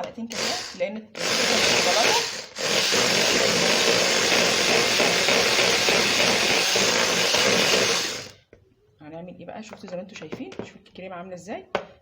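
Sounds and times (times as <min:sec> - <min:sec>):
electric hand mixer running: 0:00.3 - 0:08.4.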